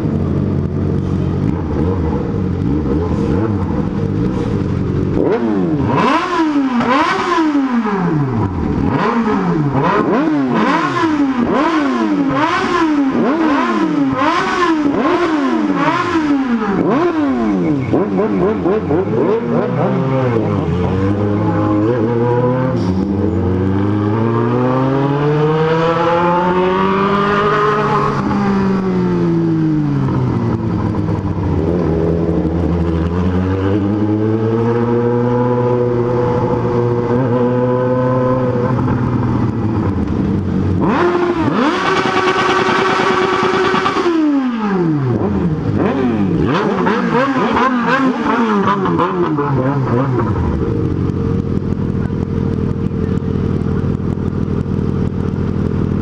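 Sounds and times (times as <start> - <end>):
motorcycle engine revving: 0.0 - 56.0.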